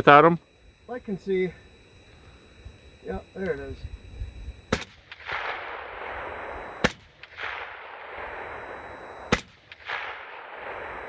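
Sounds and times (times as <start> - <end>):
rifle shots with echo: 4.6 - 11.0.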